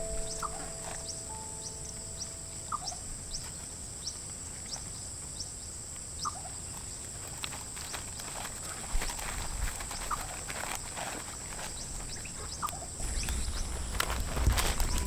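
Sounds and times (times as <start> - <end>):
lower bird calls: 0.0 - 2.9, 13.0 - 15.0
birds chirping: 0.0 - 3.0, 13.0 - 15.0
sustained music notes: 0.0 - 3.2.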